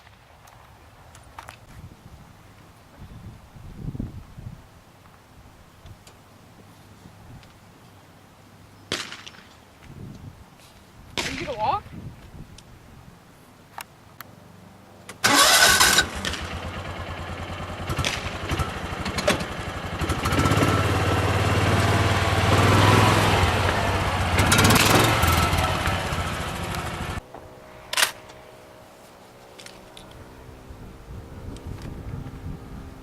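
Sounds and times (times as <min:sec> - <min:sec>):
small engine running: 0:15.2 - 0:28.8.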